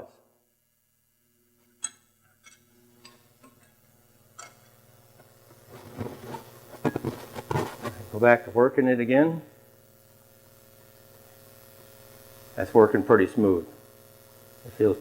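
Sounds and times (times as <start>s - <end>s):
metal tongs clicking: 4.4s - 4.8s
faint rustle: 5.2s - 8.1s.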